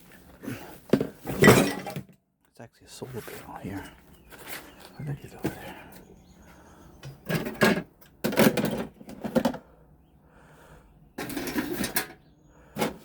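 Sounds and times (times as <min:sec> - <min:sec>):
metal and plastic items clattering: 0:00.2 - 0:02.2, 0:07.0 - 0:09.7, 0:11.2 - 0:13.0.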